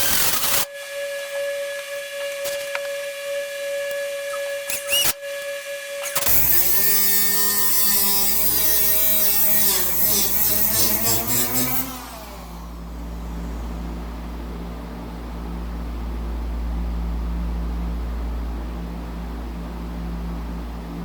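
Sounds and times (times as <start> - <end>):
cutoff wheel cutting sheet metal: 0.0 - 0.7, 4.4 - 12.8
steady hum: 0.0 - 21.0.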